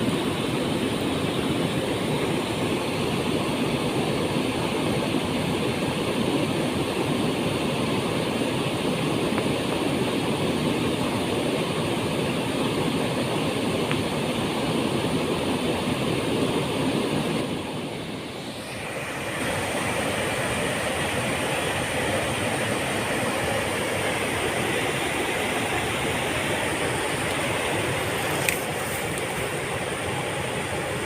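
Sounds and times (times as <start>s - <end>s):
waterfall rushing: 18.2s - 31.0s.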